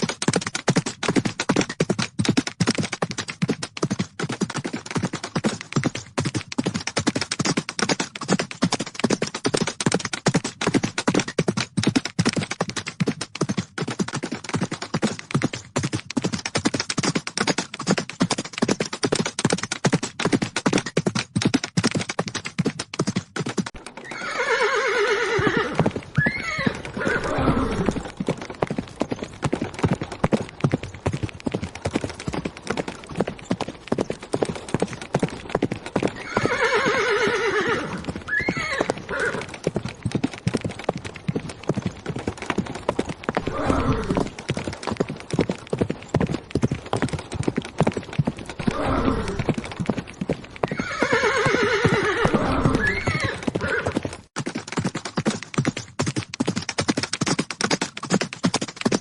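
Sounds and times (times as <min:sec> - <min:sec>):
horses galloping hoofbeats: 0:00.0 - 0:59.0
horse whinnying: 0:24.0 - 0:28.1, 0:36.2 - 0:39.6, 0:43.4 - 0:44.4, 0:48.6 - 0:49.6, 0:50.6 - 0:54.1.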